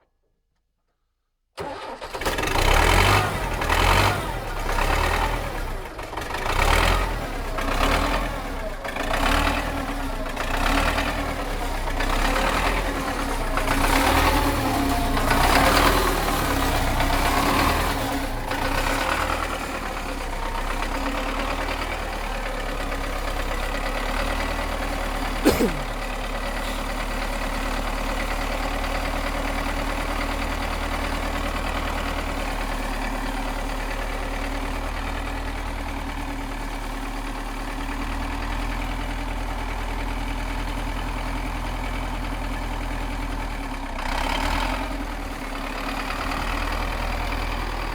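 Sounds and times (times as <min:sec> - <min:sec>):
diesel engine cranking: 0:01.6 - 0:05.4.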